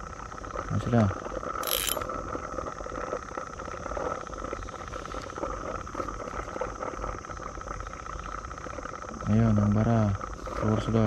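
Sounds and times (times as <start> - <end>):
insect chorus buzzing: 0.0 - 11.0.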